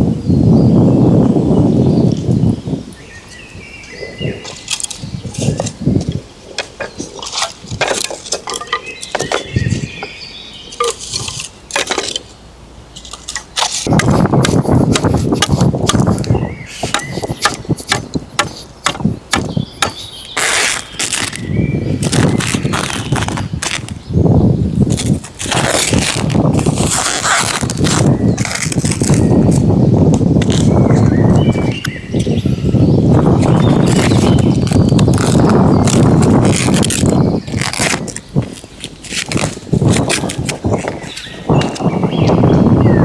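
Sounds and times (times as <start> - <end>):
camp gear clinking and knocking: 4.5 - 12.4, 13.0 - 21.4
bird chirps: 8.4 - 11.4, 15.2 - 24.2, 30.5 - 36.2
rustling: 13.0 - 24.0, 24.8 - 31.8, 33.1 - 41.3.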